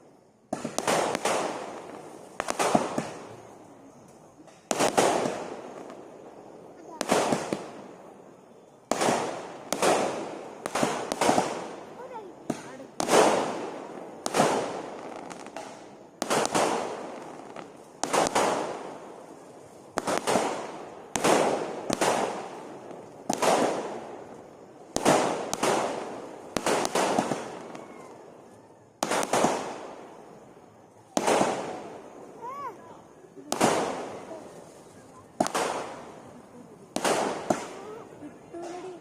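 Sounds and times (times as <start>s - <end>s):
fireworks bangs with echo: 0.0s - 39.0s.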